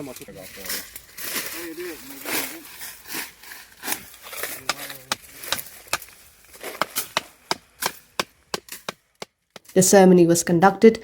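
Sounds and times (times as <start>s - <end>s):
blade chopping wood and brush: 2.2s - 9.9s.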